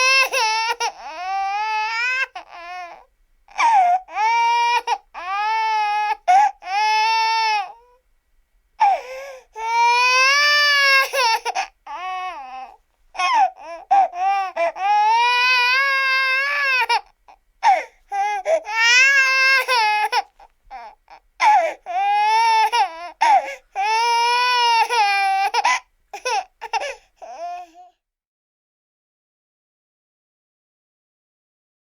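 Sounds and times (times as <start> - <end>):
infant crying: 0.0 - 8.0, 8.8 - 28.0
infant gasping breaths: 8.8 - 9.6, 17.6 - 18.7, 21.4 - 21.9, 23.2 - 23.8, 25.6 - 27.8.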